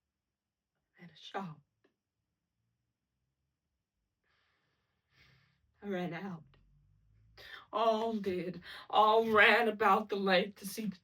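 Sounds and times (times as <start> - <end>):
faint breath drawn in: 4.2 - 5.6.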